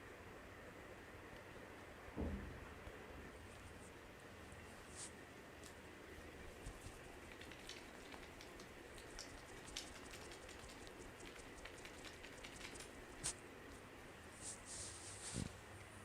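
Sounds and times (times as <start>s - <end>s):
hands crackling through hair: 6.6s - 13.4s.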